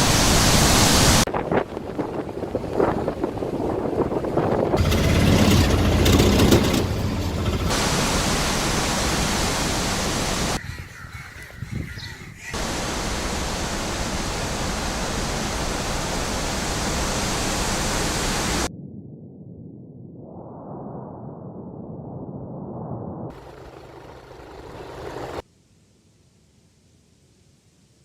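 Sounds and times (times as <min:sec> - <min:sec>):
outdoor ambient hiss: 0:12.5 - 0:18.7, 0:23.4 - 0:28.0.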